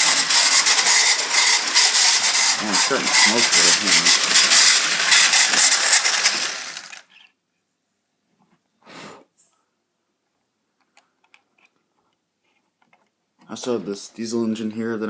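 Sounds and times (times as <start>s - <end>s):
model locomotive motor grinding: 0.0s - 7.3s.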